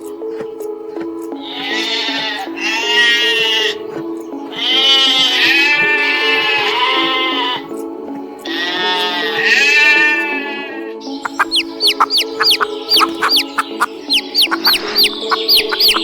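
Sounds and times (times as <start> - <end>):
background music with held notes: 0.0 - 16.0
goat bleating: 1.4 - 3.9, 4.5 - 7.7, 8.5 - 16.0.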